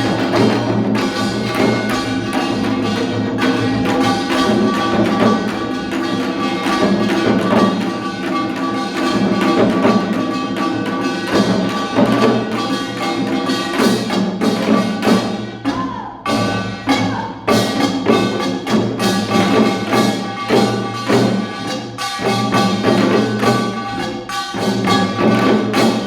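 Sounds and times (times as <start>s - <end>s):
percussion quick beat: 0.0s - 26.0s.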